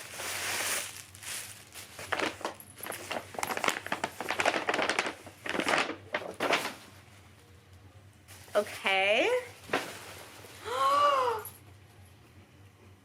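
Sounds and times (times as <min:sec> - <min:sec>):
wrapping paper tearing and crumpling: 0:00.0 - 0:06.9.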